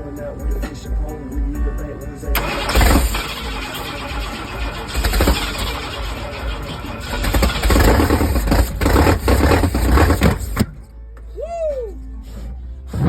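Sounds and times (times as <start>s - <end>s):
engine cranking and running unevenly: 0.0s - 10.9s.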